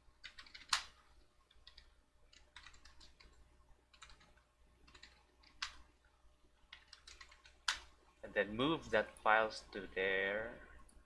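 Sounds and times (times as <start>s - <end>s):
keyboard typing: 0.2s - 0.9s, 1.5s - 5.8s, 6.7s - 7.9s.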